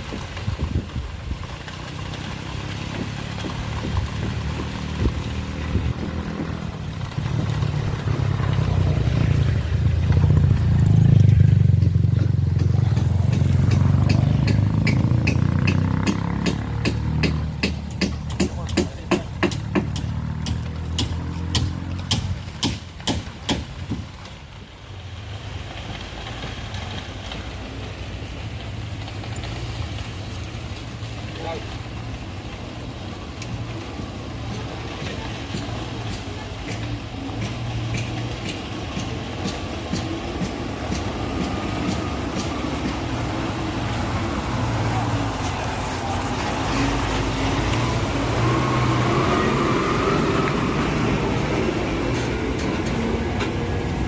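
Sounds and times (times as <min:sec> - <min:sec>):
road traffic noise: 0:00.0 - 0:54.0
vehicle engine rumbling: 0:00.0 - 0:54.0
sharp knocks: 0:12.2 - 0:24.1.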